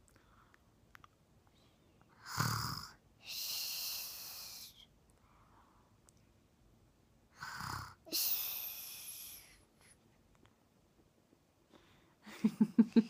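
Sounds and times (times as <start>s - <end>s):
child fake snoring: 2.2s - 4.7s, 7.4s - 9.5s
child pulsing voiced sounds: 8.1s - 9.6s.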